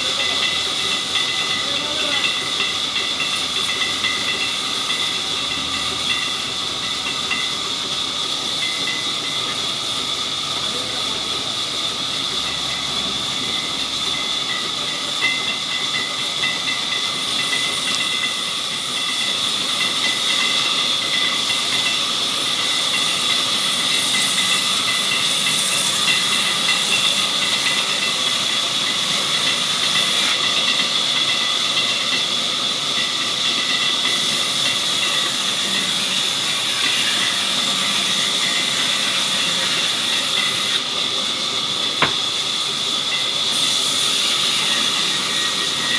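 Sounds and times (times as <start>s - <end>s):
saw cutting through log: 16.9s - 32.4s, 33.0s - 45.9s.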